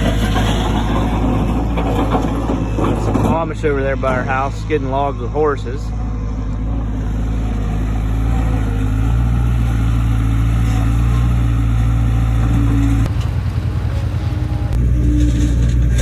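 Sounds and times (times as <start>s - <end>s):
engine running: 0.0s - 16.0s.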